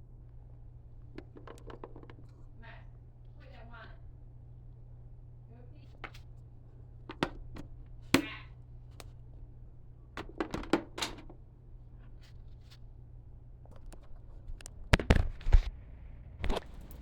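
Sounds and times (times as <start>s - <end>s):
steady low hum: 0.0s - 17.0s
objects knocking and thudding: 1.2s - 2.3s, 7.1s - 8.3s, 10.2s - 11.4s.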